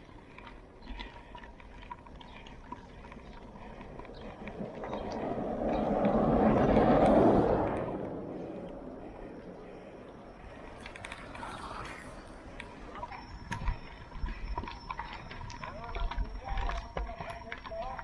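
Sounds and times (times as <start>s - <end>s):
vehicle passing by: 4.2s - 10.0s.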